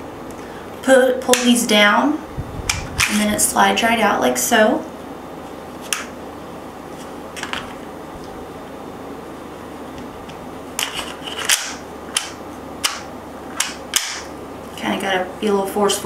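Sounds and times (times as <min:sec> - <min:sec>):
air pistol clicks and clacks: 0:10.8 - 0:14.3.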